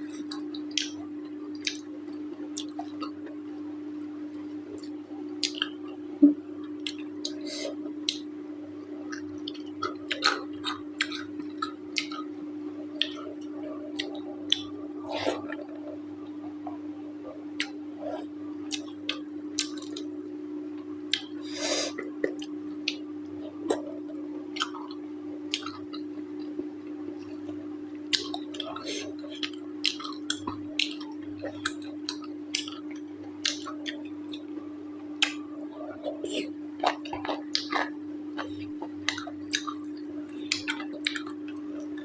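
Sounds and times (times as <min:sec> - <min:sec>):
low hum: 0:00.0 - 0:42.0
wet chewing smacks: 0:40.5 - 0:41.6.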